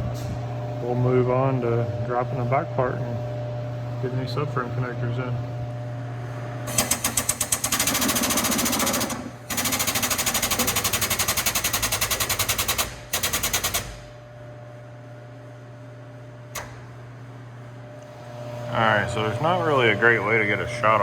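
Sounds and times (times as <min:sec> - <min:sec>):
steady low hum: 0:00.0 - 0:21.0
pneumatic impact wrench hammering: 0:06.7 - 0:14.1.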